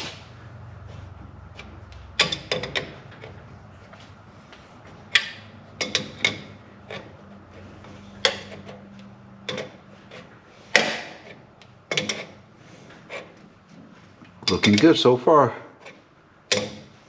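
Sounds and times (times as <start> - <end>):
wrench clinking on metal fittings: 5.1 - 7.0, 14.4 - 15.0.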